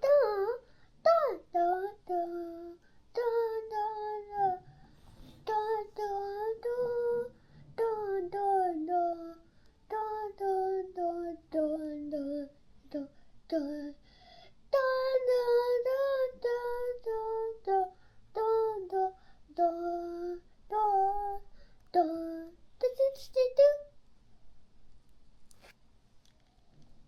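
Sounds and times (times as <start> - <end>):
girl singing: 0.0 - 24.0.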